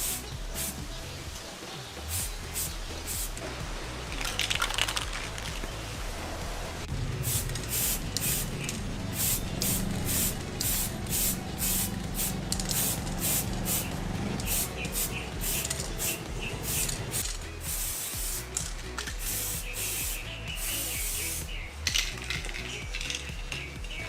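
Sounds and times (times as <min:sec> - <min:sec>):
spray paint hissing in bursts: 0:00.0 - 0:01.0, 0:02.0 - 0:03.4, 0:07.2 - 0:24.0.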